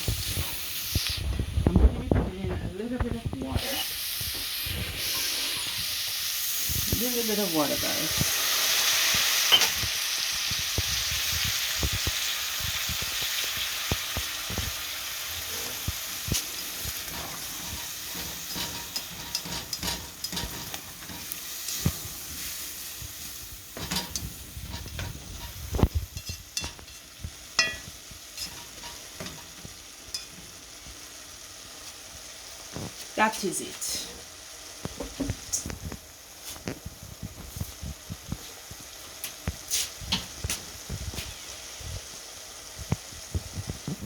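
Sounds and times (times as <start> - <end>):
vegetables sizzling in a pan: 0.0 - 44.0
utensil scraping a pan: 15.4 - 30.3.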